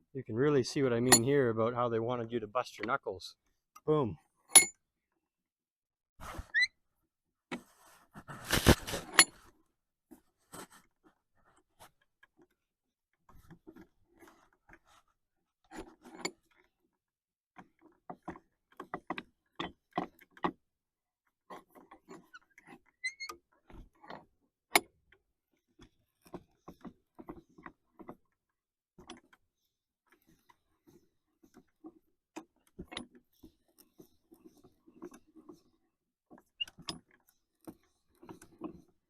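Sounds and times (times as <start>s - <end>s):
metal vise clicks and clinks: 4.5s - 4.8s.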